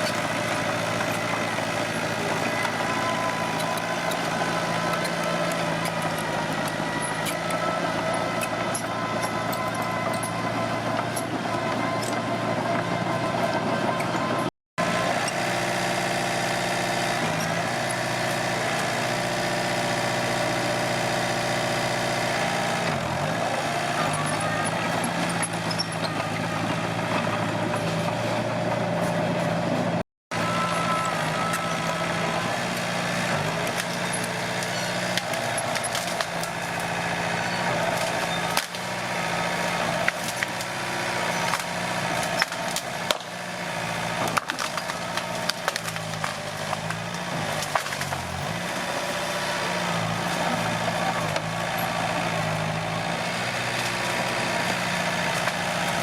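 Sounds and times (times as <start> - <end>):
bulldozer diesel engine running: 0.0 - 56.0
wood cracking and splintering: 31.3 - 56.0.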